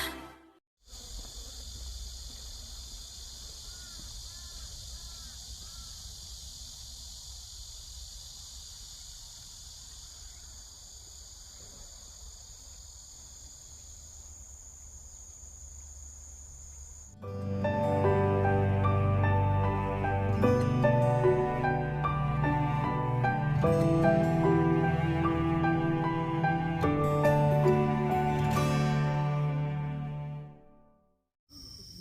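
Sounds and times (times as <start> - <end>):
insect trills: 0.8 - 17.2, 31.5 - 32.0.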